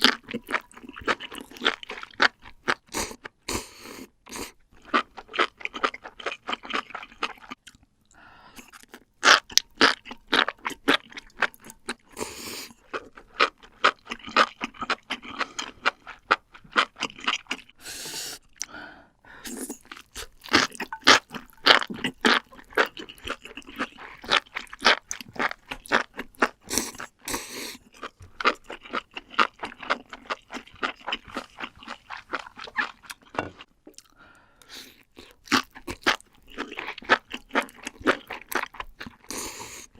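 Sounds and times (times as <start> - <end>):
crunching and chewing: 0.0 - 17.8, 19.5 - 39.9.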